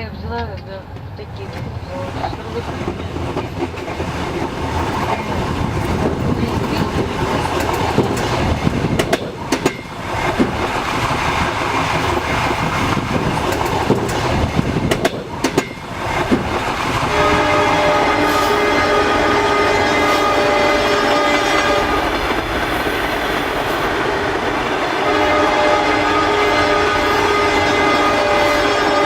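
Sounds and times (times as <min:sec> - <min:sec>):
train wheels rumbling: 0:00.0 - 0:29.0
wheels clacking over rail joints: 0:00.3 - 0:18.4.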